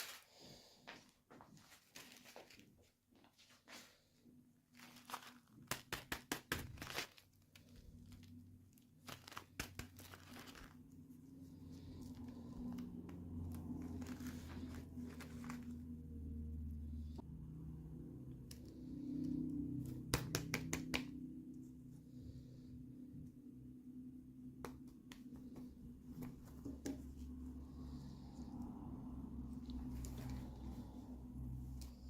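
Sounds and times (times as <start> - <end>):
packaging crinkling and tearing: 4.7 - 11.1, 13.8 - 15.9.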